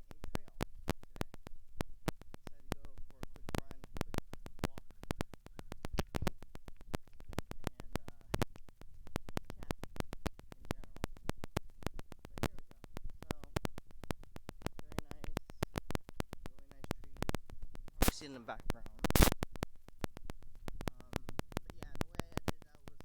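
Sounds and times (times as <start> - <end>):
faint voice-like sound: 0.0 - 1.4, 2.3 - 8.6, 9.4 - 13.7, 14.6 - 15.8, 16.4 - 17.3, 18.0 - 19.3, 20.8 - 23.0
rapid crackling clicks: 0.0 - 23.0.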